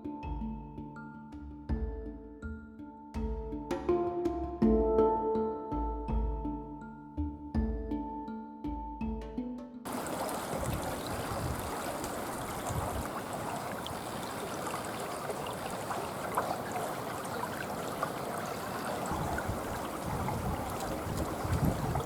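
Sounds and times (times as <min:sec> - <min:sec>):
small ticks: 0:09.9 - 0:22.0.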